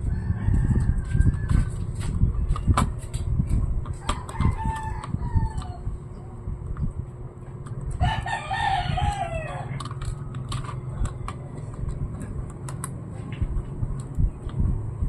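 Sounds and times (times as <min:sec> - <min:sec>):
rooster crowing: 0:00.0 - 0:01.7, 0:04.0 - 0:05.9, 0:08.0 - 0:09.8.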